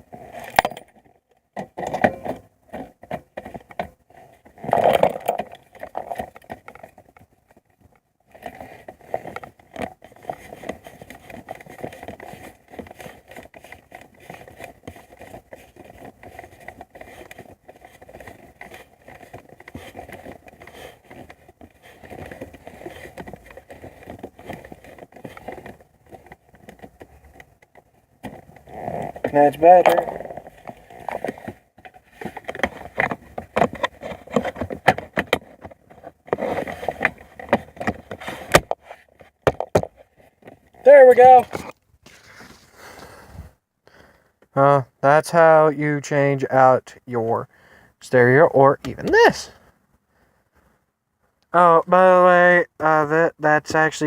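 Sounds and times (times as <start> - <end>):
small clicks and rattles: 0.0 - 41.8
car parts knocking and clicking: 9.2 - 40.6.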